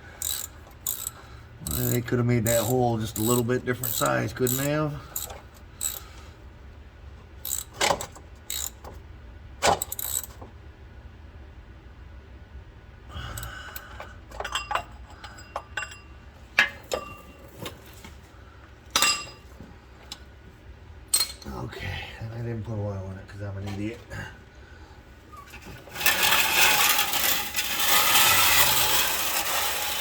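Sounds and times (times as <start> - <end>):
steady low hum: 0.0 - 30.0
metal tools clinking and rattling: 0.2 - 6.1, 14.3 - 18.1, 18.9 - 19.6, 21.1 - 21.5.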